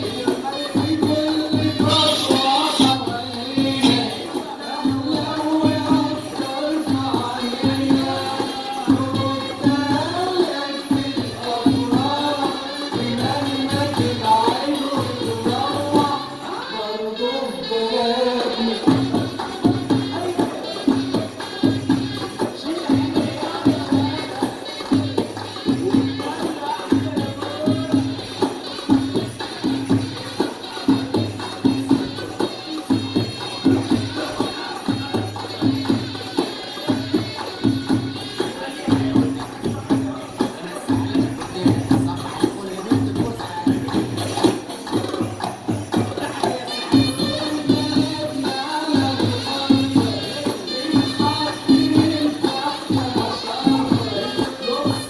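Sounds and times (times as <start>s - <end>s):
dance music with drum pattern: 0.0s - 16.4s, 17.6s - 55.0s
person singing: 0.0s - 55.0s
tambourine jingles: 18.5s - 55.0s.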